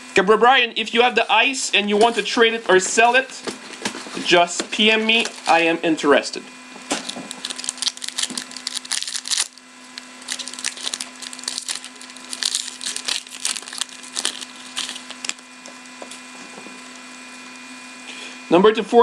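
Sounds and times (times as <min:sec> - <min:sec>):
steady low hum: 0:00.0 - 0:19.0
card packaging rustling and crinkling: 0:01.9 - 0:05.7, 0:06.8 - 0:17.1.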